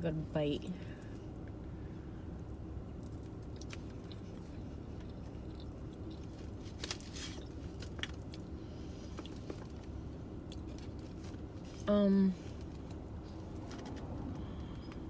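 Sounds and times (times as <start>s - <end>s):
low steady hum: 0.0s - 15.0s
person chewing: 3.0s - 11.1s.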